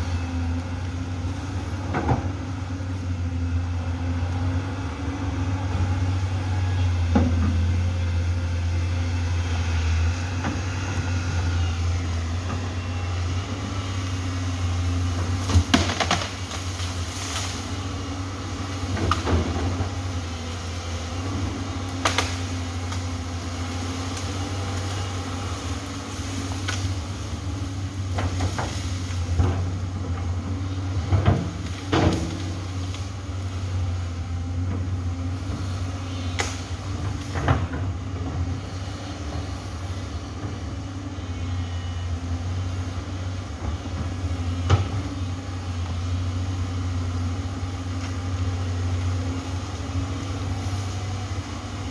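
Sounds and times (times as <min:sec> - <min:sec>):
diesel engine running: 0:00.0 - 0:51.9
sharp knocks and cracks: 0:15.4 - 0:17.6, 0:21.9 - 0:23.1.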